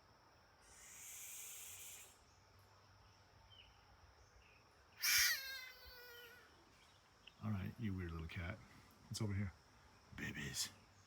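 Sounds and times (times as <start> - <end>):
hyrax breathy hiss: 0.6 - 2.2
hyrax call with falling squeal: 5.0 - 6.5.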